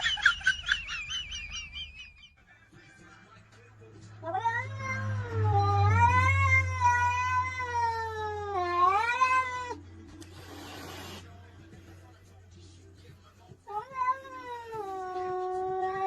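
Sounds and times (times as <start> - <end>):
low hum: 4.2 - 8.2
cat yowling: 4.2 - 9.8, 13.7 - 16.0.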